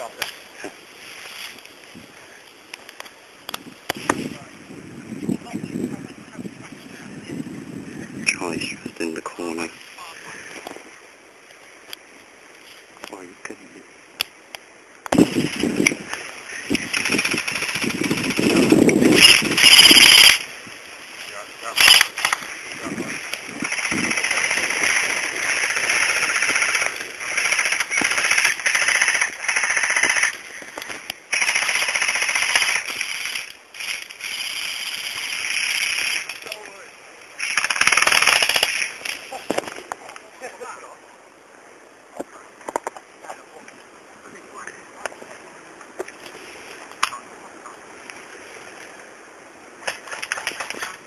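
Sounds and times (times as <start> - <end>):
steady background hiss: 0.0 - 51.0
airsoft gun firing bursts: 16.9 - 20.4, 23.6 - 30.3, 31.3 - 33.4, 37.4 - 38.8.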